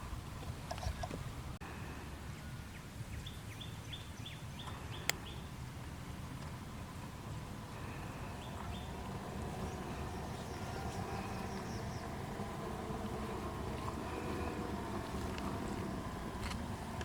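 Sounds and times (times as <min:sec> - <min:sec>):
low outdoor rumble: 0:00.0 - 0:17.0
bird chirping: 0:02.4 - 0:05.6, 0:07.8 - 0:16.2.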